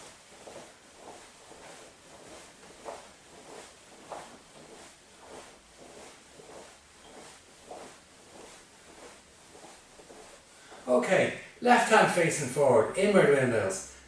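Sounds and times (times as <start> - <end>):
clothing swishing and rustling: 0.0 - 11.1.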